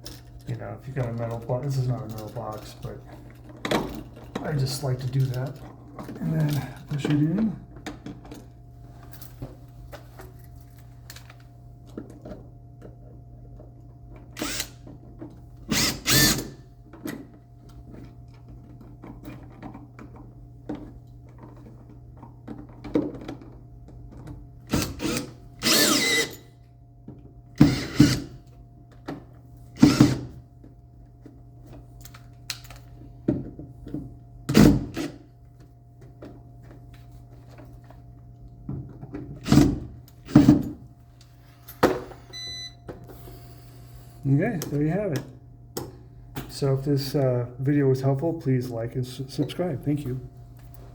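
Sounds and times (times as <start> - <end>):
power screwdriver running: 14.4 - 14.8, 15.7 - 16.6, 24.7 - 26.4, 27.6 - 28.4, 29.8 - 30.3.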